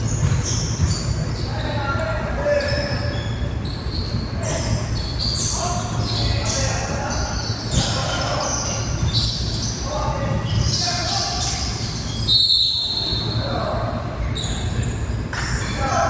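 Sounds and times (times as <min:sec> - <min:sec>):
shoes squeaking on floor: 0:00.0 - 0:13.3, 0:14.2 - 0:15.8
basketball bouncing: 0:00.1 - 0:01.2.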